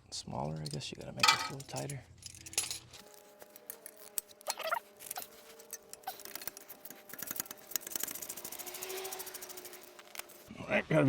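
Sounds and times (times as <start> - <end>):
ratchet wrench clicking: 4.1 - 10.5.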